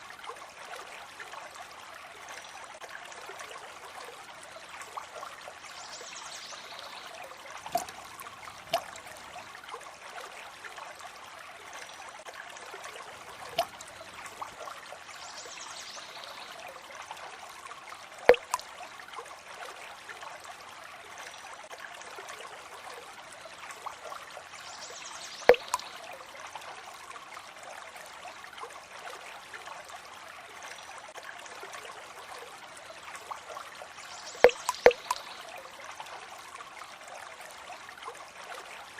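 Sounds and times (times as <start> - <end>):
water trickling: 0.0 - 29.2, 29.8 - 38.6
water drops landing: 7.6 - 9.4, 13.1 - 14.6, 18.3 - 18.6, 25.5 - 25.9, 34.4 - 35.3.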